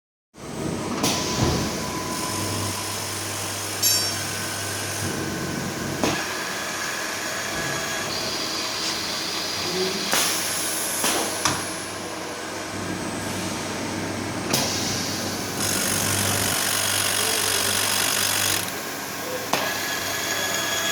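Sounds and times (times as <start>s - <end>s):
machine motor hum: 0.5s - 20.9s.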